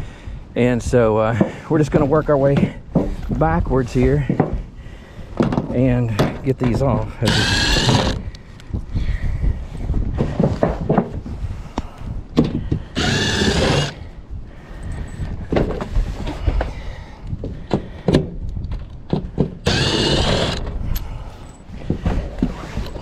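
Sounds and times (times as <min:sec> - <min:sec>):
power drill backing out screws: 0:07.2 - 0:08.2, 0:13.0 - 0:14.0, 0:19.6 - 0:20.7.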